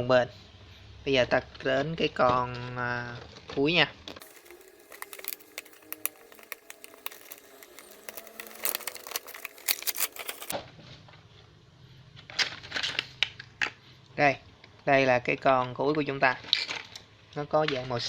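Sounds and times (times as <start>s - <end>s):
plastic toy box being opened: 4.2s - 10.5s, 12.4s - 13.4s.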